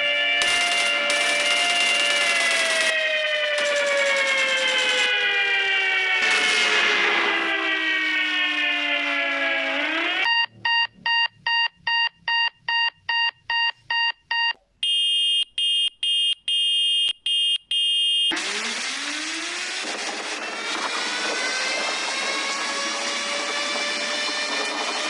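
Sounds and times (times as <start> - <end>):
broken high alarm tone: 0.0 - 11.7, 17.8 - 25.0
siren winding: 0.4 - 3.0.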